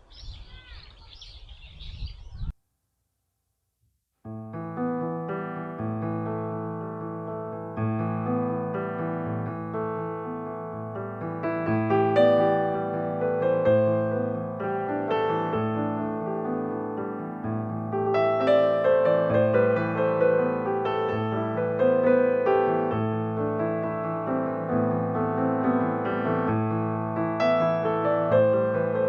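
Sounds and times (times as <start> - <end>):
gentle piano music: 4.3 - 29.0.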